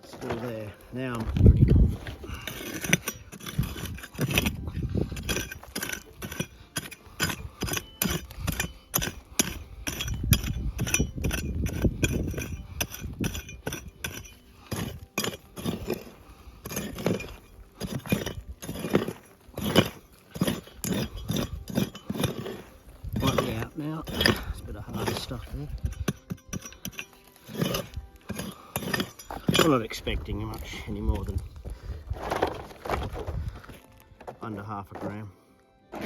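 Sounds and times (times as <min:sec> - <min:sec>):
digging tool striking stony ground: 0:00.0 - 0:35.3
stones clinking against metal: 0:00.0 - 0:35.3.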